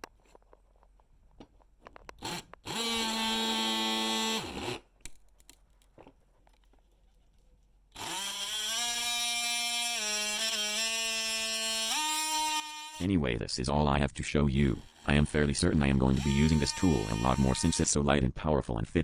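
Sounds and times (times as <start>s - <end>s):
oscillating multi-tool buzzing: 2.2s - 4.8s, 8.0s - 13.1s, 14.5s - 17.9s.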